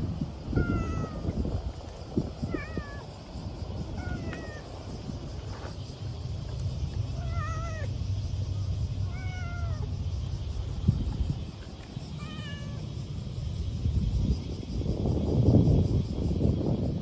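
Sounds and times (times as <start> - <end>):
steady low rumble: 0.0 - 17.0
cat meowing: 0.5 - 1.4, 2.4 - 3.1, 3.9 - 4.8, 7.2 - 7.9, 9.0 - 9.9, 12.1 - 12.8.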